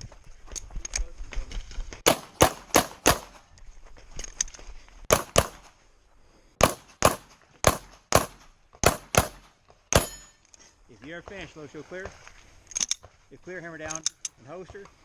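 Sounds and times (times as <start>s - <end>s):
pistol shots: 2.1s - 3.4s, 5.1s - 5.7s, 6.6s - 10.4s.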